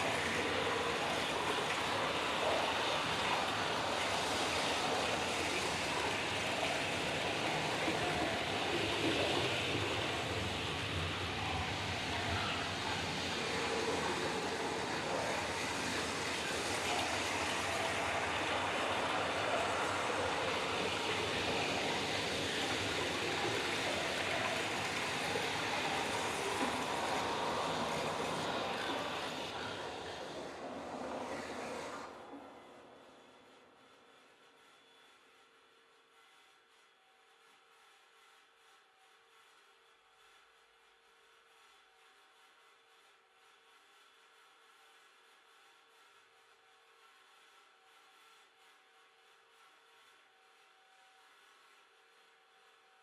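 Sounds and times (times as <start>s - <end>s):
dense electroacoustic rushing noise: 0.0s - 33.5s.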